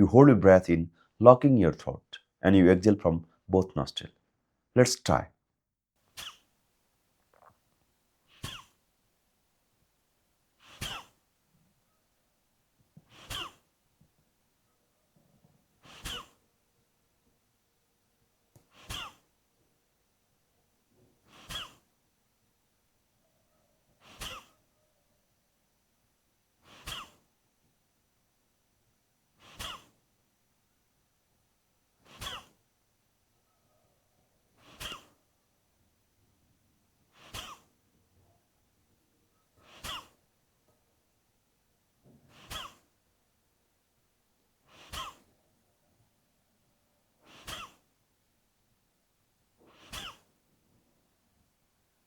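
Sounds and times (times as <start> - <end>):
forceful exhalations through nose: 8.3 - 8.8, 10.6 - 11.2, 13.0 - 13.6, 15.8 - 16.4, 18.6 - 19.2, 21.2 - 21.9, 24.0 - 24.5, 26.6 - 27.3, 29.4 - 30.0, 32.0 - 32.6, 34.6 - 35.2, 37.1 - 37.7, 39.6 - 40.2, 42.3 - 42.9, 44.6 - 45.3, 47.2 - 47.9, 49.6 - 50.3.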